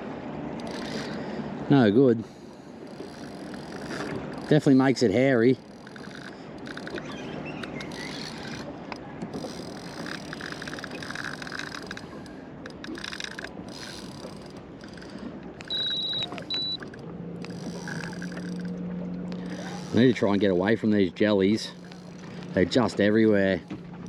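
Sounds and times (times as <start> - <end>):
low steady hum: 0.0 - 24.0
water around a boat: 0.0 - 24.0
wind: 0.0 - 24.0
short electronic beeps: 15.6 - 17.0.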